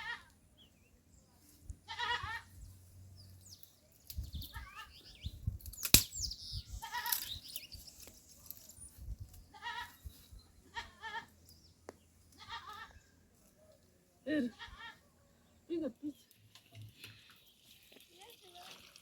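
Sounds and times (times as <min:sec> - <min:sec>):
goat bleating: 0:01.9 - 0:02.5, 0:09.5 - 0:10.0, 0:10.7 - 0:11.3, 0:12.4 - 0:13.0, 0:14.5 - 0:15.0.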